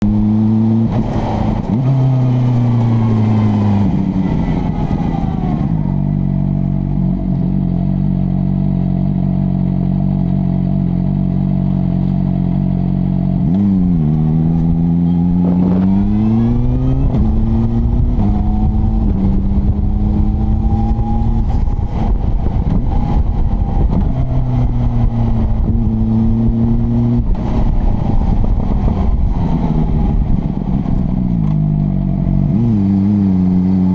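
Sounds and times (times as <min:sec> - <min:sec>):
motorcycle engine accelerating: 0:00.0 - 0:33.9.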